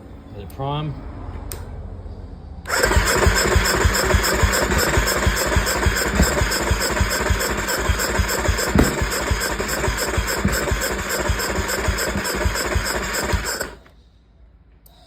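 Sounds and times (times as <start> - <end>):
engine cranking by electric starter: 2.7 - 14.0.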